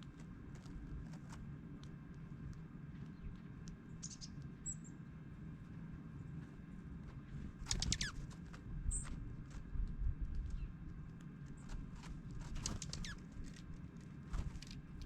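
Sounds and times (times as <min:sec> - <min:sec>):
steady low rumble: 0:00.0 - 0:15.0
bird chip calls: 0:03.9 - 0:04.9, 0:07.7 - 0:08.2, 0:12.6 - 0:13.2.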